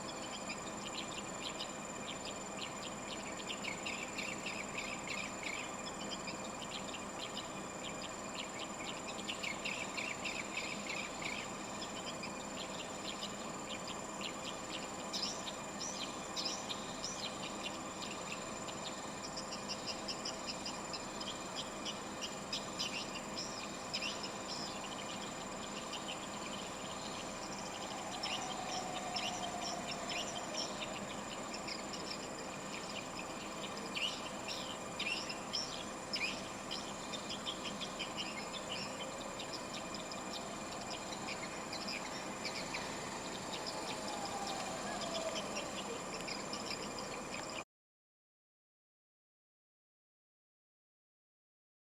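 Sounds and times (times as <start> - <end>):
high-pitched whine: 0.0 - 47.6.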